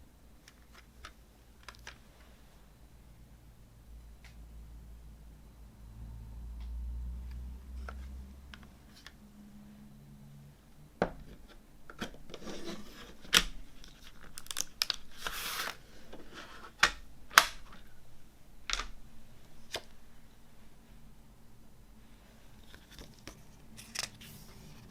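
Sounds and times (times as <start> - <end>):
plastic wrap tearing and crinkling: 13.3 - 15.8.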